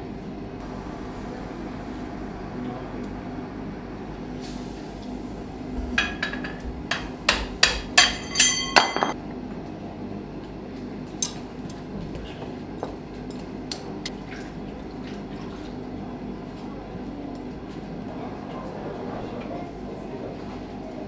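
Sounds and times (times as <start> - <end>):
hammer striking iron on anvil: 6.0 - 9.2.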